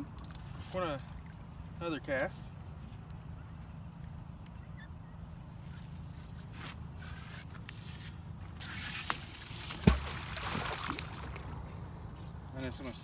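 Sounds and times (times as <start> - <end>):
water sloshing: 0.2 - 4.2, 5.6 - 12.0
magnet splashing into water: 9.0 - 11.5.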